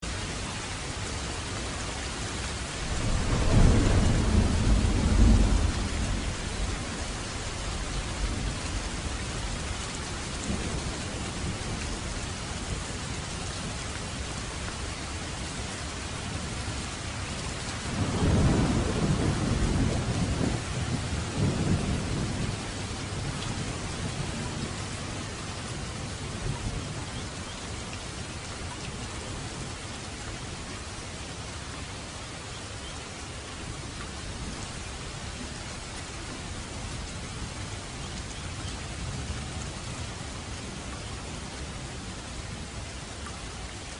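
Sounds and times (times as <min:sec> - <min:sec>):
steady rain falling: 0:00.0 - 0:43.9
thunder rumbling: 0:02.8 - 0:13.2, 0:17.3 - 0:27.2.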